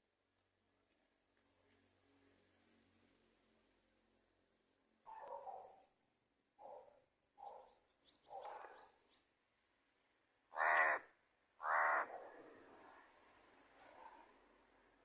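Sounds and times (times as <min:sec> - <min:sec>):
crows cawing: 0:10.5 - 0:12.1.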